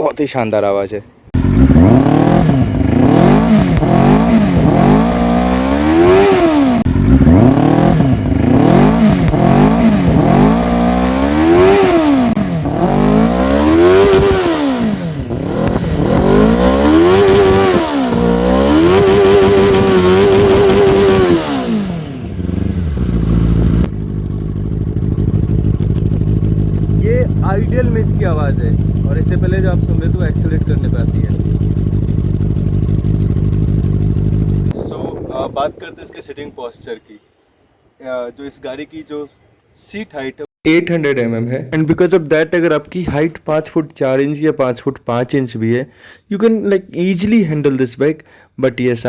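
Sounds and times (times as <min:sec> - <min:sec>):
motorcycle engine revving: 0:01.3 - 0:34.9
motorcycle engine idling: 0:01.4 - 0:34.7.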